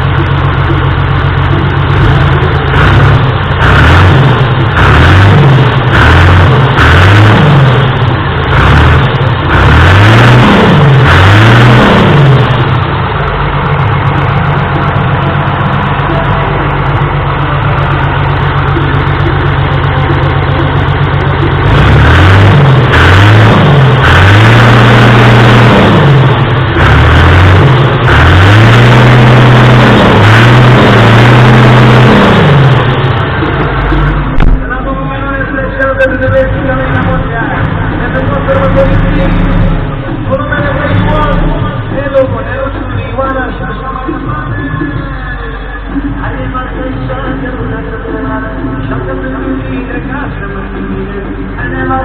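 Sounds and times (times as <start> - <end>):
tractor diesel engine revving: 0.0 - 52.0.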